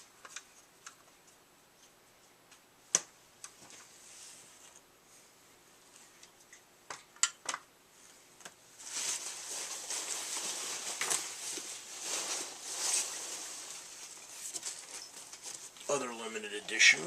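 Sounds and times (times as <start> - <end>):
packaging rustling and crinkling: 8.8 - 16.8.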